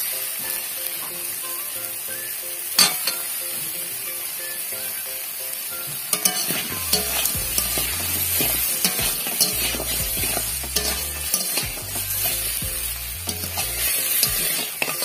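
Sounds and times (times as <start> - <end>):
crabs sizzling in oil: 0.0 - 15.0
spatula scraping a pan: 6.1 - 15.0.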